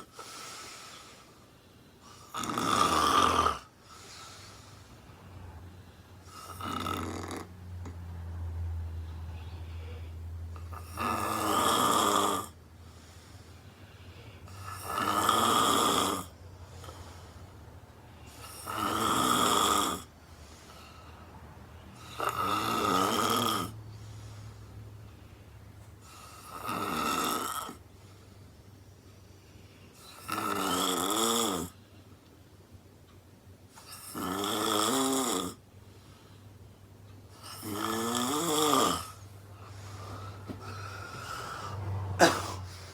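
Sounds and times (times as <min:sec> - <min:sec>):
woman snoring loudly: 0:02.2 - 0:03.7, 0:06.3 - 0:07.6, 0:10.7 - 0:12.6, 0:14.5 - 0:16.4, 0:18.3 - 0:20.1, 0:22.0 - 0:23.8, 0:26.0 - 0:27.8, 0:30.0 - 0:31.8, 0:33.9 - 0:35.6, 0:37.4 - 0:39.2.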